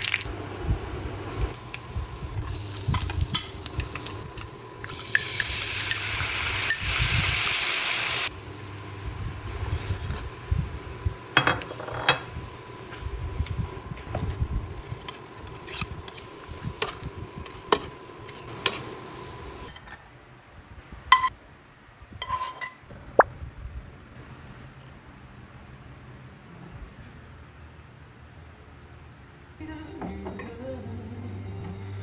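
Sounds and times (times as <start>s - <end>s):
utensils and dishes clinking: 2.7s - 8.1s, 11.3s - 12.4s.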